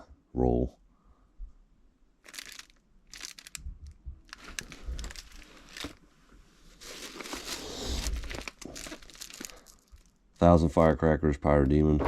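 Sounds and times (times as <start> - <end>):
wrapping crinkling and rustling: 2.2 - 11.0.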